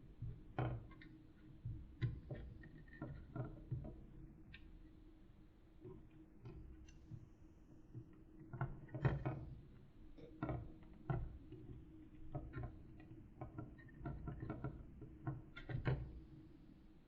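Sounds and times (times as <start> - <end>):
light clicks and taps: 0.2 - 4.7.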